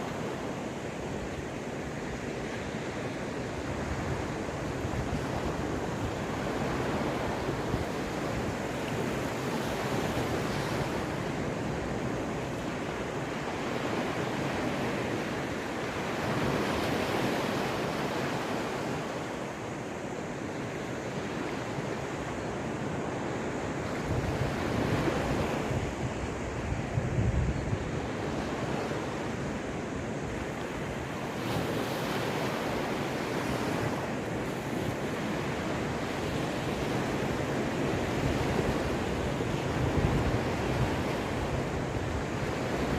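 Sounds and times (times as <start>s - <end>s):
sea waves breaking on shore: 0.0s - 42.9s
wind buffeting microphone: 21.3s - 42.9s.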